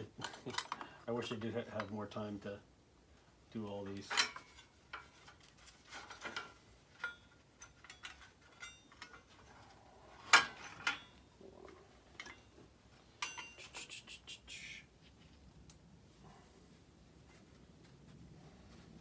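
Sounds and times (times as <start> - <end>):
light metal clinks: 6.4 - 9.5, 12.1 - 13.7
sharp metallic clack: 13.2 - 13.9.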